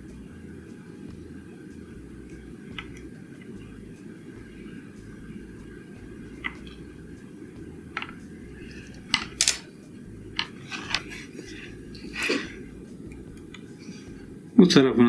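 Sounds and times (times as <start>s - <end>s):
steady low hum: 0.0s - 15.0s
metal tools clicking and tapping: 8.9s - 9.7s, 10.4s - 11.2s.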